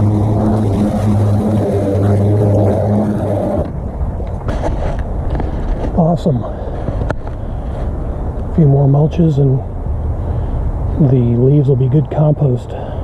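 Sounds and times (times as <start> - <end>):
electric lawnmower motor hum: 0.0 - 3.8
wind noise on microphone: 0.0 - 13.0.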